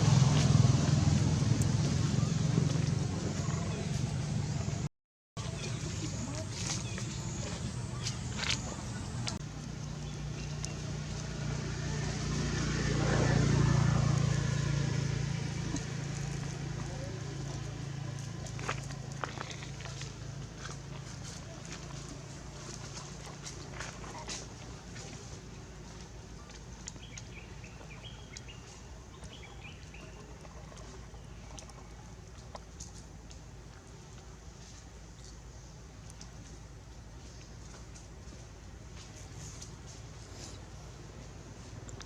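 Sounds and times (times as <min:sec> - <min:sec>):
low rumble: 0:00.0 - 0:23.1
vehicle passing by: 0:00.0 - 0:32.0.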